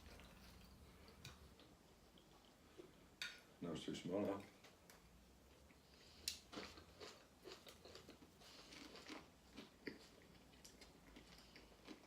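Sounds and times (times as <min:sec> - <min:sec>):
faint chewing: 0:04.5 - 0:12.0.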